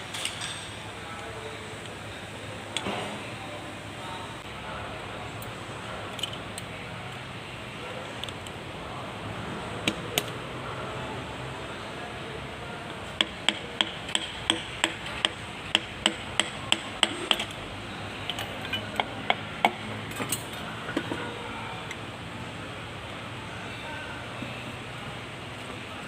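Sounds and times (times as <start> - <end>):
hammer tapping on metal: 13.2 - 17.5.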